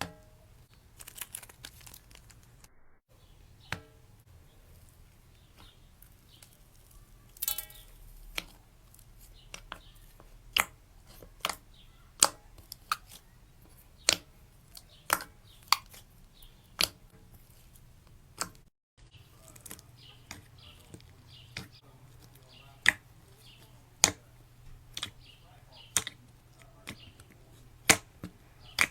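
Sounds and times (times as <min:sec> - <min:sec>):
slime clicking and popping: 0:04.8 - 0:17.6, 0:24.9 - 0:25.2, 0:25.9 - 0:28.9.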